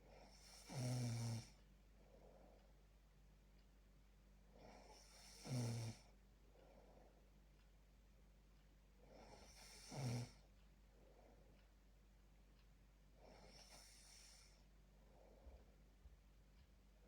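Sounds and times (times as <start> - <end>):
person snoring: 0.3 - 1.6, 4.6 - 6.1, 9.2 - 10.4.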